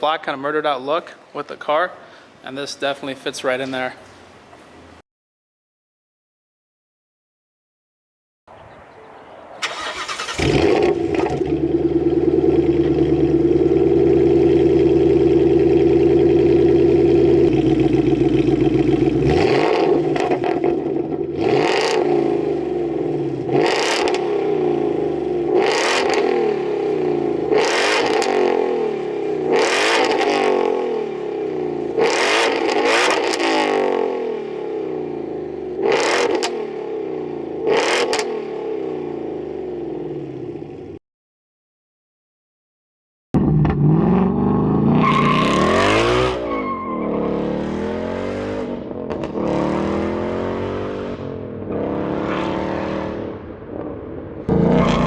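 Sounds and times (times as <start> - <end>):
car engine idling: 9.6 - 20.2
car engine revving: 9.6 - 34.6, 43.4 - 55.0.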